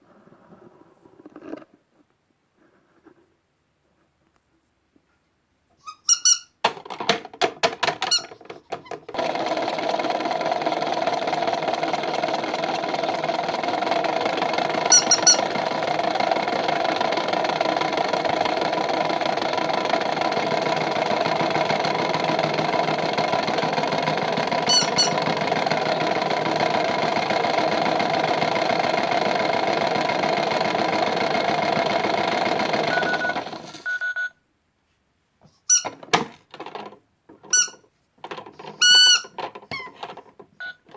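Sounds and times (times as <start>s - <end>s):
clicks and squeaks: 7.9s - 9.2s, 35.7s - 36.7s, 37.4s - 40.9s
small electric motor whirring: 9.2s - 33.8s.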